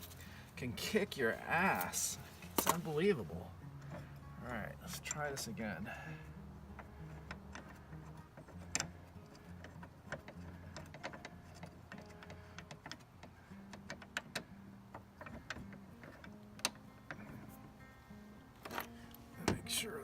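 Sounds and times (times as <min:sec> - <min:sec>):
metal screws clicking and tapping: 0:03.7 - 0:04.2, 0:04.9 - 0:05.5, 0:06.7 - 0:17.8, 0:18.5 - 0:19.2.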